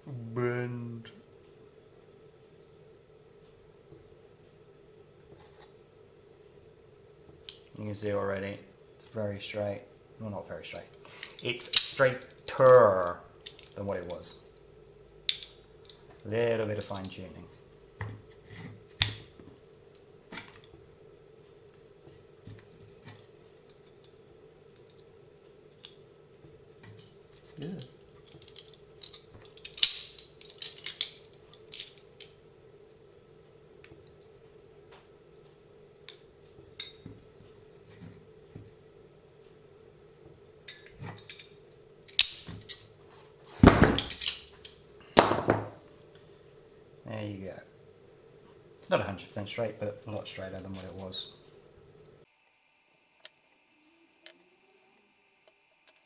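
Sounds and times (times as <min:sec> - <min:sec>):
faint steady hum: 0:00.0 - 0:56.0
metal tools clinking: 0:11.2 - 0:12.4, 0:13.4 - 0:14.2, 0:16.7 - 0:17.2, 0:27.8 - 0:32.3, 0:42.1 - 0:42.9, 0:44.0 - 0:44.7, 0:52.8 - 0:56.0.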